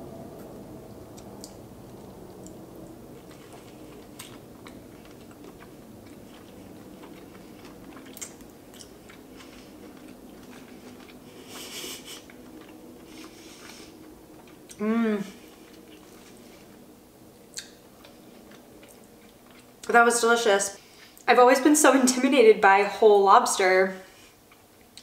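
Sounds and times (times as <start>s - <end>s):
person chewing wet mouth sounds: 1.1s - 19.9s
hissy slurp: 9.0s - 14.1s.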